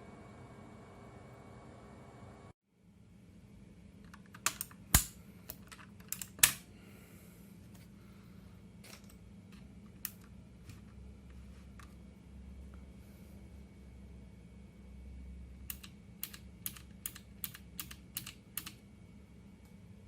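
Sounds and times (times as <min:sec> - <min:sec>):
mechanical keyboard clicks: 0:15.7 - 0:18.8.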